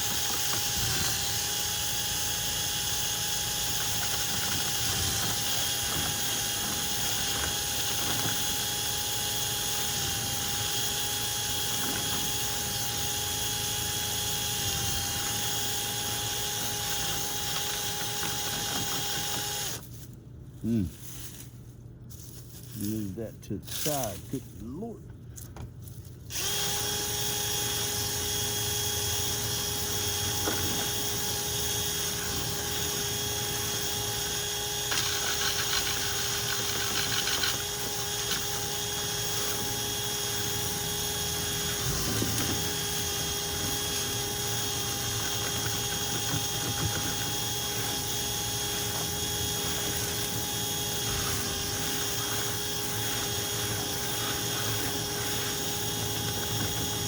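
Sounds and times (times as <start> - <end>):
power drill whining: 0.0 - 19.8, 26.3 - 57.0
brush rattling and scraping in duct: 16.6 - 26.6, 34.8 - 38.6, 41.7 - 57.0.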